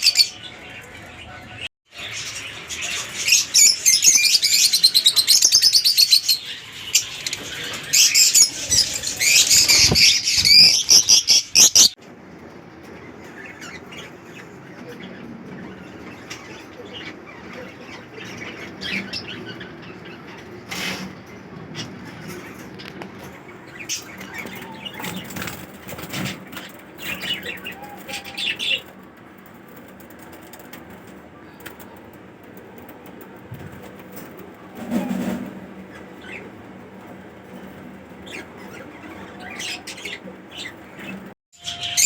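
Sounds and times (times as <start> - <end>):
parakeets chirping: 0.0 - 12.0, 23.5 - 34.5, 35.8 - 42.0
wings fluttering: 23.6 - 39.0.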